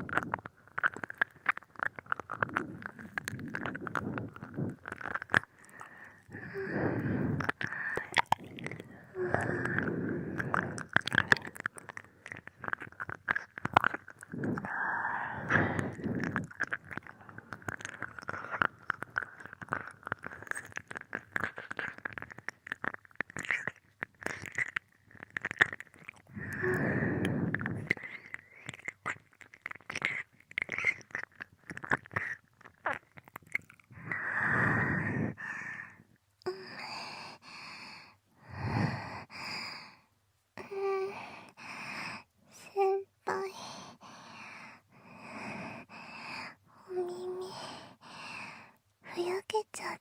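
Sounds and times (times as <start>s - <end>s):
wet mouth clicks and licks: 0.0s - 6.4s, 7.0s - 35.5s
slow breaths: 2.4s - 12.6s, 14.2s - 20.6s, 26.3s - 28.8s, 33.9s - 42.7s, 43.4s - 48.8s.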